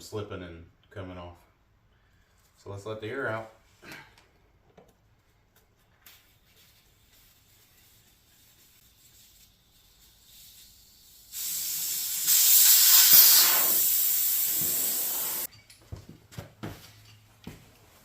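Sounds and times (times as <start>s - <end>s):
air hissing out of a tire: 8.6s - 15.5s.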